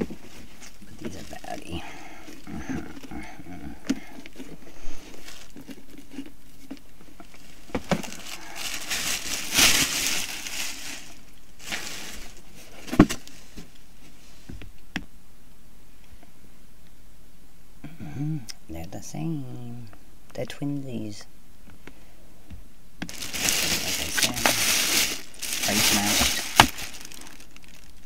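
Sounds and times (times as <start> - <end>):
crinkling rustle: 0.0 - 14.8, 23.0 - 28.0.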